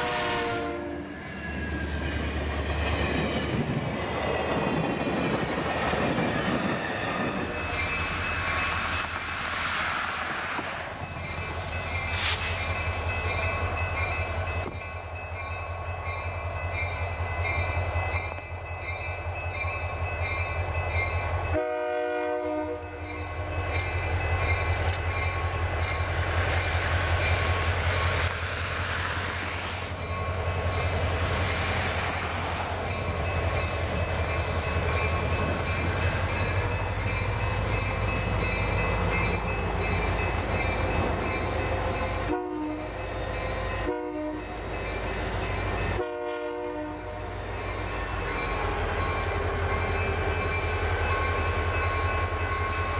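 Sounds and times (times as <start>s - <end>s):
train horn: 0.0s - 1.2s, 21.5s - 23.2s, 42.1s - 43.0s, 43.8s - 44.6s, 45.9s - 47.2s
diesel locomotive engine rumble: 0.0s - 52.9s.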